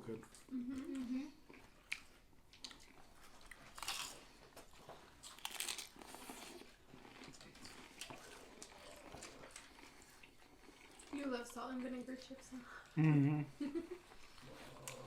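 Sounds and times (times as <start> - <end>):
chewing: 0.1 - 13.0, 14.0 - 15.0
crunching potato chips: 2.6 - 4.4, 5.1 - 10.0.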